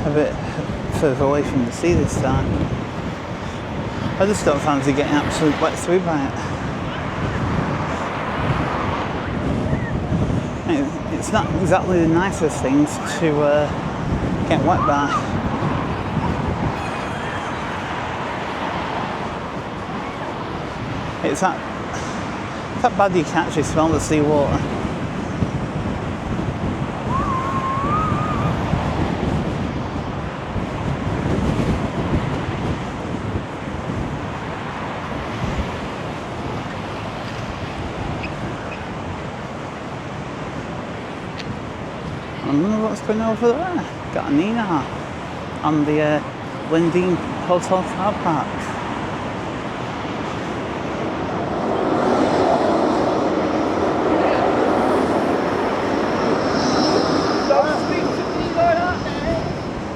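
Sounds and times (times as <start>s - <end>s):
sea surging against wall: 0.0s - 59.9s
wind buffeting microphone: 0.0s - 59.9s
thin wavering whistle: 27.1s - 28.6s, 54.6s - 59.8s.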